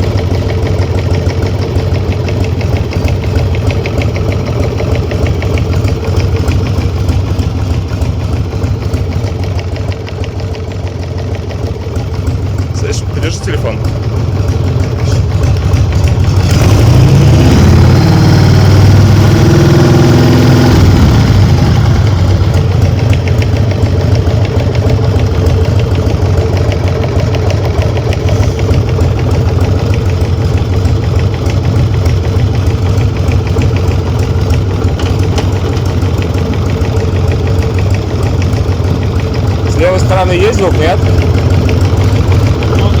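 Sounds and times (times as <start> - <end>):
fast regular engine knocking: 0.0 - 43.0
motorcycle engine revving: 0.0 - 43.0.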